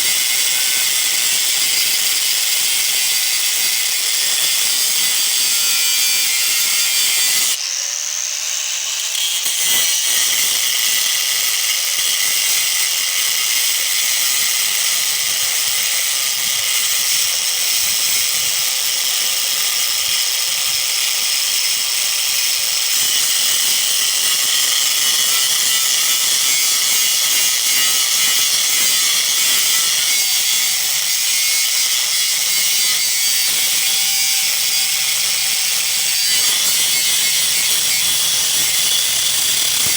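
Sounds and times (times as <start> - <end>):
angle grinder cutting metal: 0.0 - 39.9.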